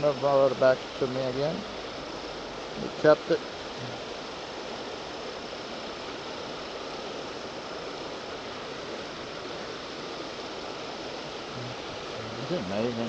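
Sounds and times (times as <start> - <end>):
river water rushing: 0.0 - 13.0.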